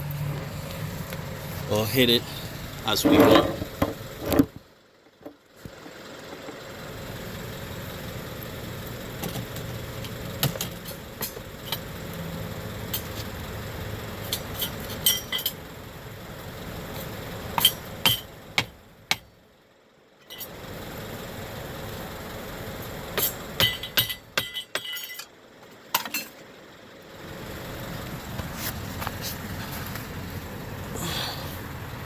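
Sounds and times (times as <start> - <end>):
metal parts and tools clinking: 3.0 - 3.8, 10.0 - 11.9, 13.0 - 13.3, 14.2 - 15.6, 17.0 - 18.3, 20.2 - 20.6, 23.2 - 26.4.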